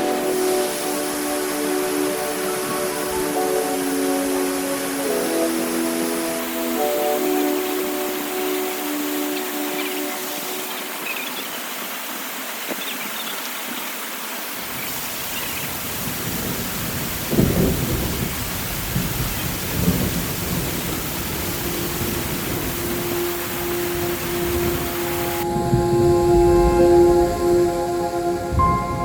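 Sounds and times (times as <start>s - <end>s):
steady rain: 0.0s - 29.0s
thunder rumbling: 15.8s - 29.0s.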